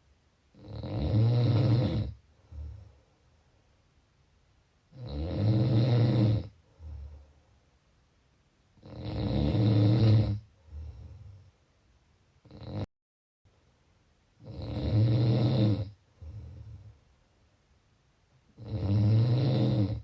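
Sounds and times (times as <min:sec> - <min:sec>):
person snoring: 0:00.5 - 0:02.9, 0:04.9 - 0:07.2, 0:08.8 - 0:11.4, 0:12.4 - 0:12.9, 0:14.4 - 0:16.9, 0:18.6 - 0:20.0
quiet breath: 0:02.1 - 0:04.1, 0:06.4 - 0:08.0, 0:10.3 - 0:11.8, 0:15.8 - 0:17.5.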